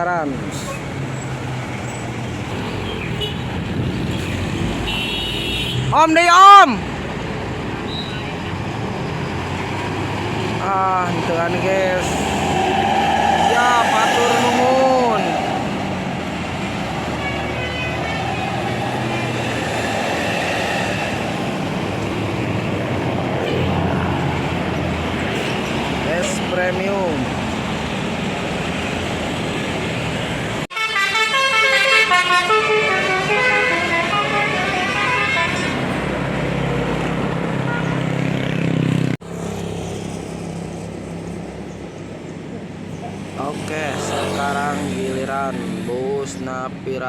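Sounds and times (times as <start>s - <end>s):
bus diesel engine rumbling: 0.0s - 5.9s, 6.7s - 39.2s
road noise: 0.0s - 47.0s.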